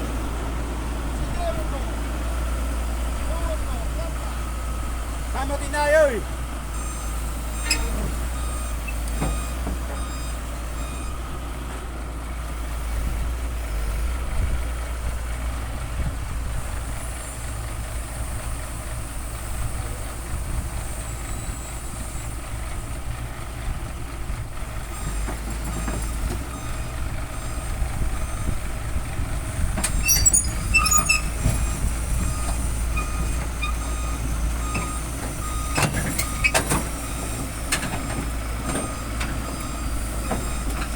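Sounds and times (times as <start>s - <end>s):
excavator engine rumbling: 0.0s - 40.9s
clicks and squeaks: 7.6s - 8.1s, 29.8s - 31.8s, 34.7s - 37.0s.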